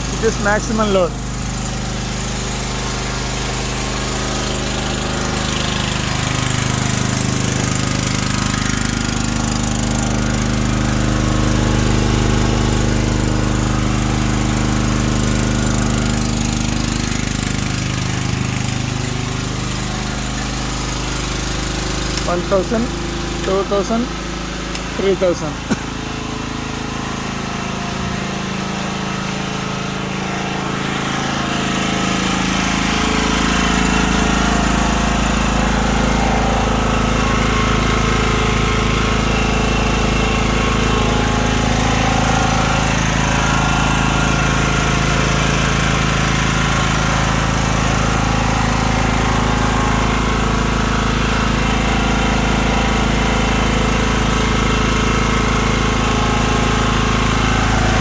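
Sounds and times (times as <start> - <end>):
generator engine running: 0.0 - 58.0.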